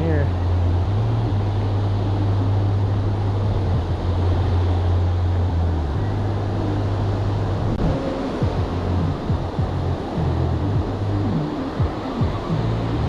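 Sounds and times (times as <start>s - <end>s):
beach surf: 0.0s - 13.0s
wind buffeting microphone: 0.0s - 13.0s.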